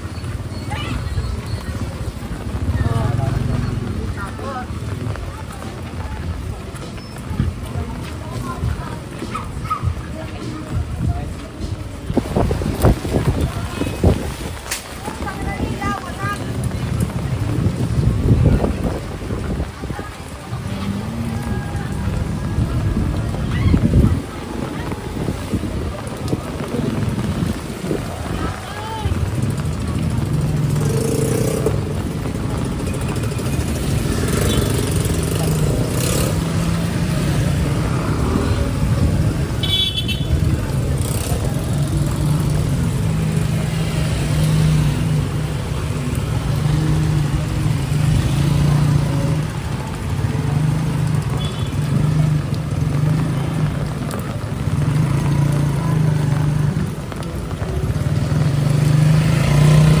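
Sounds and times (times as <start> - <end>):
low traffic rumble: 0.0 - 60.0
motorcycles and cars passing: 0.0 - 60.0
vehicle horn toot: 39.6 - 40.4, 51.4 - 51.8.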